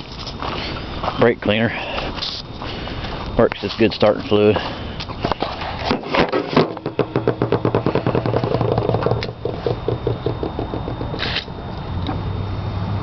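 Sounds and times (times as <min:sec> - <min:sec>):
engine cranking without starting: 0:08.2 - 0:11.6.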